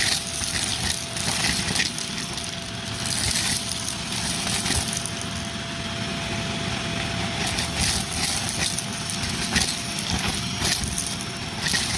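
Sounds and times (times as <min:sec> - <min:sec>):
debris clinking up vacuum wand: 0:00.0 - 0:05.5, 0:07.4 - 0:11.9
vacuum cleaner running: 0:00.0 - 0:11.9.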